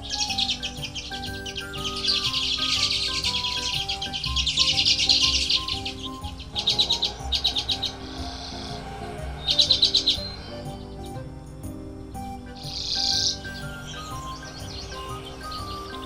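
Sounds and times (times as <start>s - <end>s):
bird chattering calls: 0.0s - 8.7s, 12.6s - 16.0s
soft background music: 0.0s - 16.0s.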